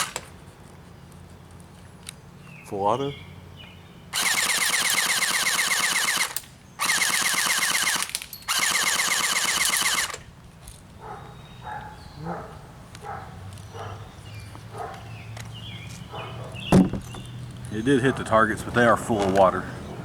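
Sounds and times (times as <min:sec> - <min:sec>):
airsoft gun automatic bursts: 0:00.0 - 0:00.2, 0:04.2 - 0:10.3.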